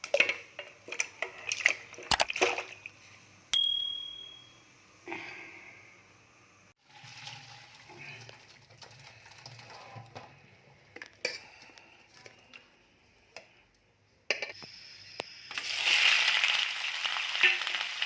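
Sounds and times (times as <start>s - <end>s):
sharp metallic ding: 3.6s - 4.6s.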